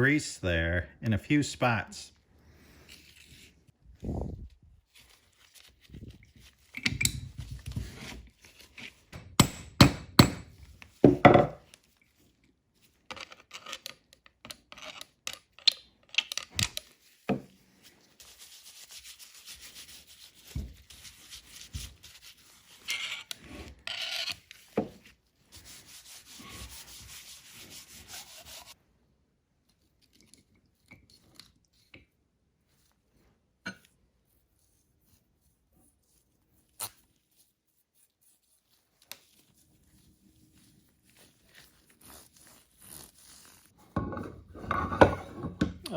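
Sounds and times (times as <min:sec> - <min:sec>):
metal vise parts clunking: 0:11.1 - 0:11.6, 0:44.0 - 0:45.8
metal scraping and rubbing: 0:43.4 - 0:45.8.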